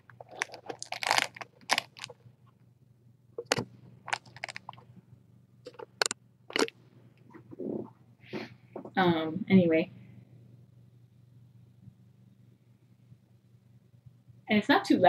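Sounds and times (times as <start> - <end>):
sharp clicks and crunches: 0.0 - 2.2, 3.4 - 4.9, 5.6 - 6.8
faint low hum: 0.0 - 15.0.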